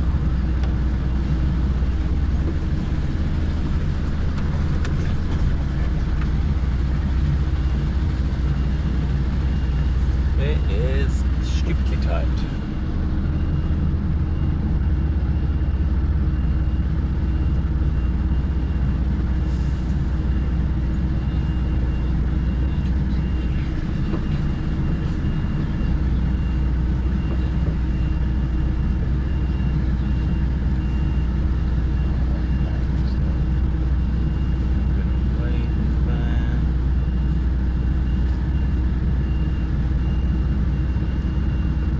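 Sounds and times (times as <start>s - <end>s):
diesel truck engine droning: 0.0s - 41.9s.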